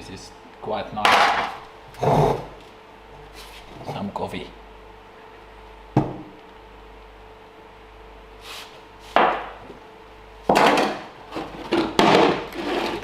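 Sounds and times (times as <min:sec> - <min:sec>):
hard objects knocking and clattering: 0:10.5 - 0:13.0.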